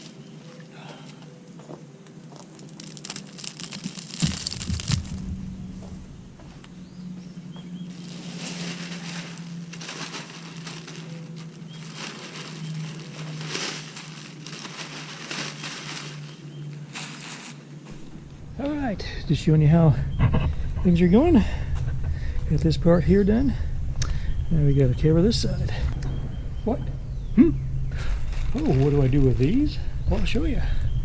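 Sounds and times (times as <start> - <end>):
mulch rustling and crunching: 0.0 - 0.7, 2.0 - 6.7, 7.6 - 18.8, 27.9 - 29.7.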